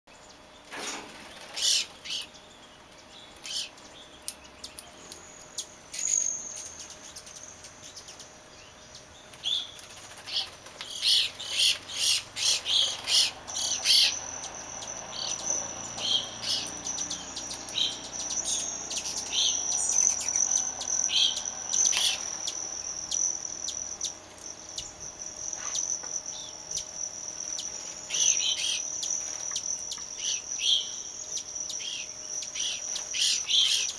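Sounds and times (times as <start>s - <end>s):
small birds chirping: 0.1s - 33.9s
high-pitched insect-like tone: 9.7s - 33.9s.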